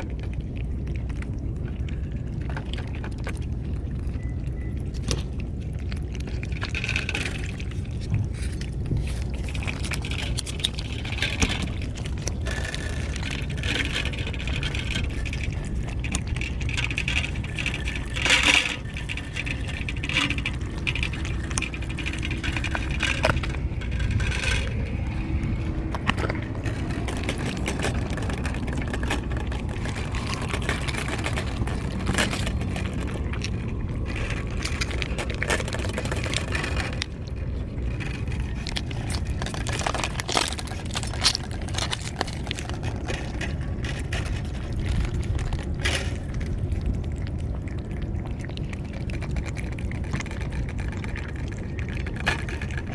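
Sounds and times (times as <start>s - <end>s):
low rumble: 0.0s - 52.9s
small clicks and scrapes: 0.0s - 52.9s.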